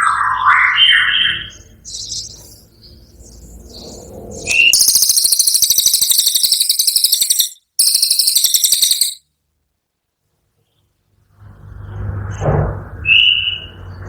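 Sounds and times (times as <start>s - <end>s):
bird rattling trill: 4.8s - 9.2s.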